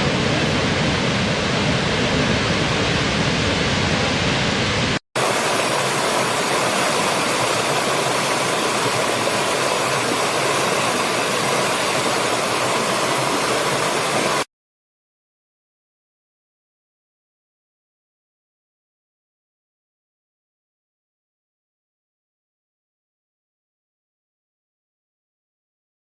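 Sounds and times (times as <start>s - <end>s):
waterfall rushing: 2.6s - 14.5s.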